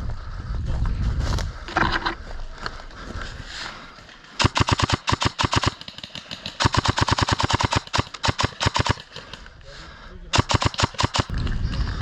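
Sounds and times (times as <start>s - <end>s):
airsoft gun firing bursts: 4.4s - 9.4s, 10.3s - 11.4s.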